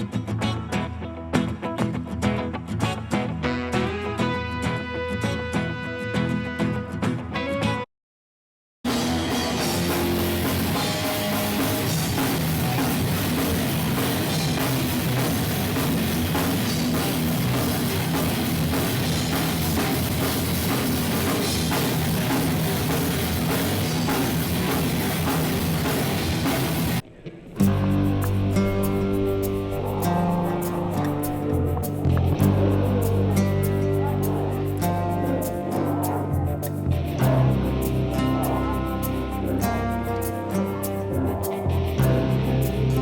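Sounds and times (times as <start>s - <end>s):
heavy metal rock music: 8.9s - 43.0s.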